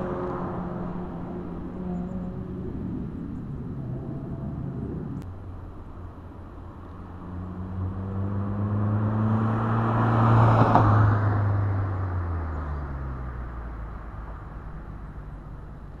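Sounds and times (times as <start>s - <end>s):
car driving past: 7.1s - 14.3s.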